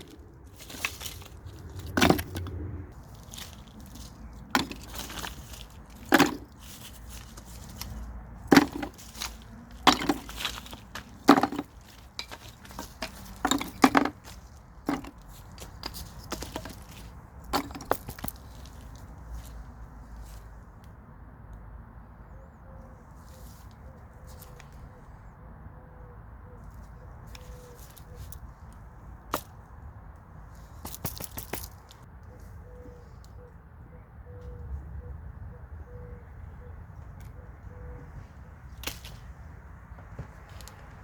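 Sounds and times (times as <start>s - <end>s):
sharp wooden knocks and cracks: 0.0s - 2.6s, 3.3s - 18.6s, 30.8s - 32.1s.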